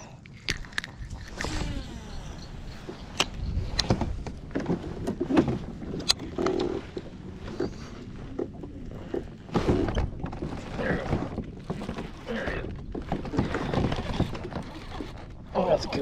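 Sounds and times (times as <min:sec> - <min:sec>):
low rumble: 0:00.0 - 0:11.5
fishing gear clicks and knocks: 0:00.1 - 0:02.0, 0:02.9 - 0:12.2.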